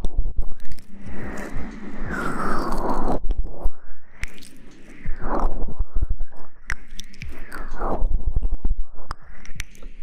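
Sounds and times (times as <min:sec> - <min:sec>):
clicks: 0:04.2 - 0:04.8.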